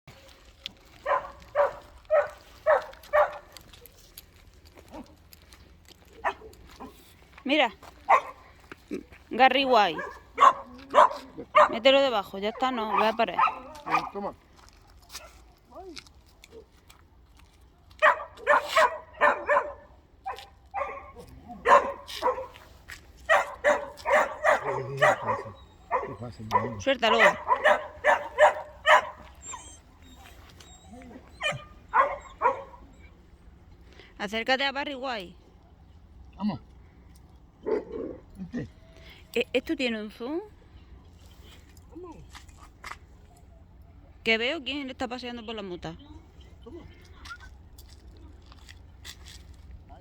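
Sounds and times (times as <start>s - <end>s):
dog barking: 1.0s - 3.5s, 6.2s - 6.9s, 8.1s - 8.4s, 9.9s - 11.9s, 12.5s - 14.2s, 18.0s - 22.6s, 23.3s - 29.4s, 31.4s - 32.8s.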